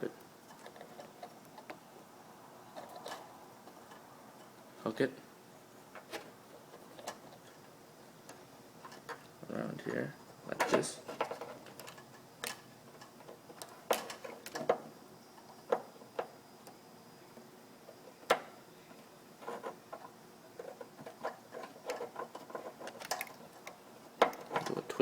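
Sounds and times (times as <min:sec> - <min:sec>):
clicks of wires being twisted: 0:10.5 - 0:14.8, 0:19.4 - 0:25.0.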